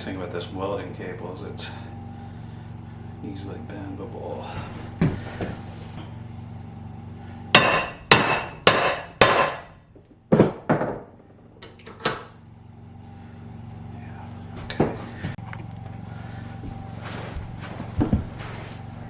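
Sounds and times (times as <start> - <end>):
sledgehammer striking metal: 7.5 - 11.0.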